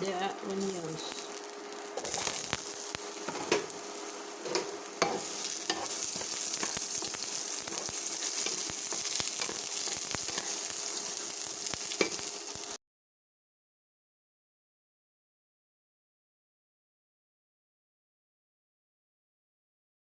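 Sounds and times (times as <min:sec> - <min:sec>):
garlic and onions sizzling in a pan: 0:00.0 - 0:12.8
utensil scraping a pan: 0:02.0 - 0:02.6, 0:03.2 - 0:03.7, 0:04.4 - 0:11.2.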